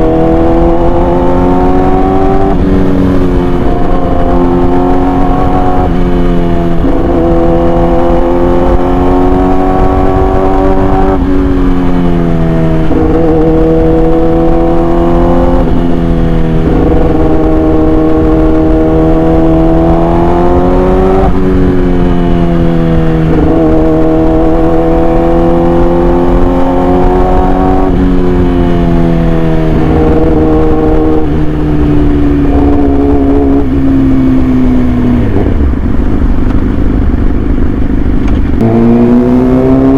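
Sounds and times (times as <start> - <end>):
sport bike engine revving: 0.0 - 39.9.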